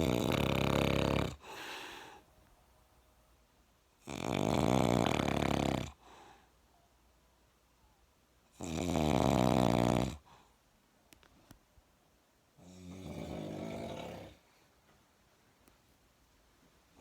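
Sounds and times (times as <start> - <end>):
person snoring loudly: 0.0 - 1.5, 4.0 - 6.0, 8.6 - 10.3, 12.7 - 14.4.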